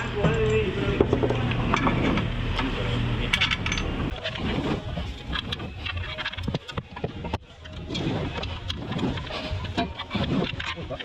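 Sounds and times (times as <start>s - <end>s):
metal tools clinking: 0.0s - 2.3s, 3.2s - 4.4s.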